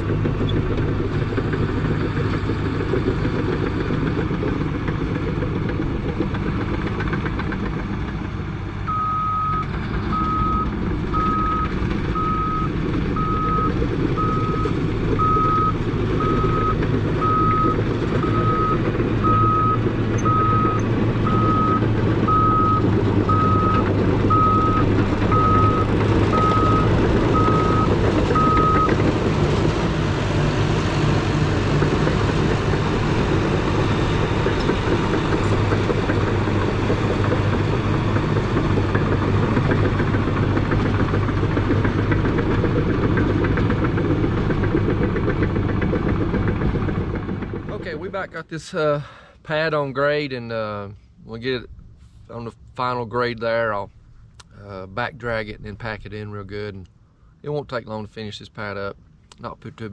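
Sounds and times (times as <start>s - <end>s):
diesel engine running under load: 0.0s - 59.9s
reverse alarm beeping: 8.9s - 29.0s.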